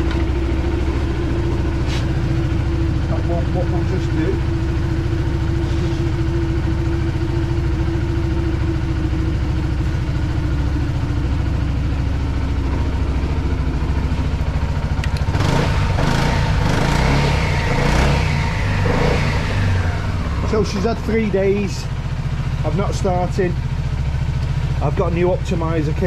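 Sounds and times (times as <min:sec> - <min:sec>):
scooter engine idling: 0:00.0 - 0:26.0
click: 0:15.0 - 0:15.3.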